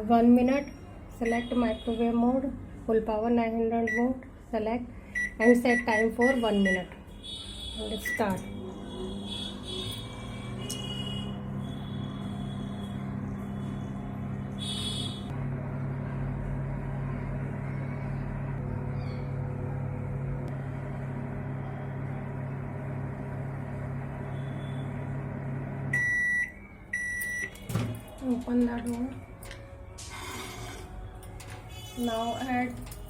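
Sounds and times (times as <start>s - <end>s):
microwave beeps: 0.6s - 1.5s, 5.2s - 6.9s, 8.0s - 8.6s, 24.2s - 29.2s
microwave oven humming: 7.8s - 33.0s.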